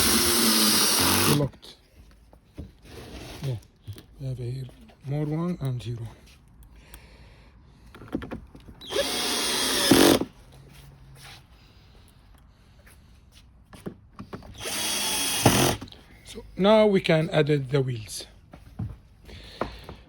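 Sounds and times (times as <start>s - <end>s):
power drill running: 0.0s - 1.5s, 8.8s - 10.3s, 14.5s - 15.9s.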